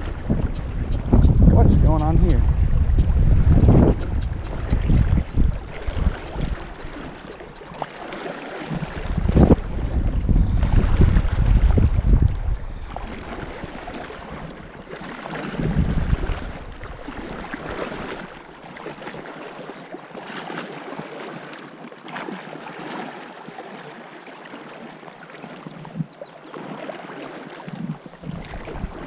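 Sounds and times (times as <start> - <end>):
wind buffeting microphone: 0.0 - 7.9, 8.6 - 18.4, 27.7 - 29.0
river current rushing: 4.4 - 25.7.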